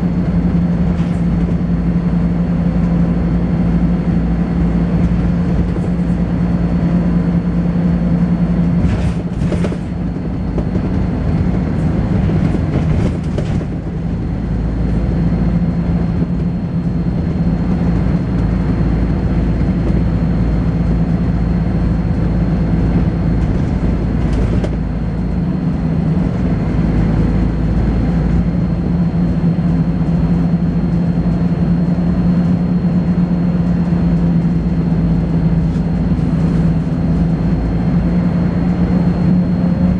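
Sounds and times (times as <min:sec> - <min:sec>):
bus engine drone: 0:00.0 - 0:39.9.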